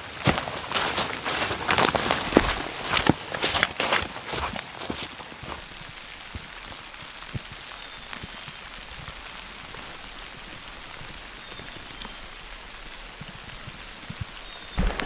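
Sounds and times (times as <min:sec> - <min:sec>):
light rain: 0:00.0 - 0:15.0
drops ticking and tapping: 0:05.4 - 0:15.0.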